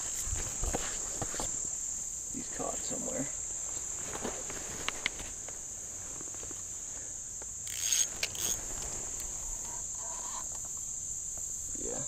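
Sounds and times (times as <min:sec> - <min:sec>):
crickets trilling: 0:00.0 - 0:12.0
rustling: 0:03.4 - 0:10.9.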